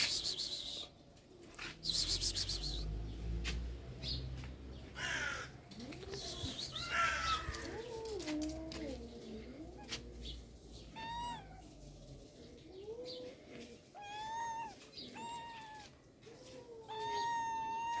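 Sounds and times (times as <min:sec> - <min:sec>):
cat meowing: 0:06.0 - 0:10.0, 0:10.8 - 0:11.8, 0:13.9 - 0:18.0.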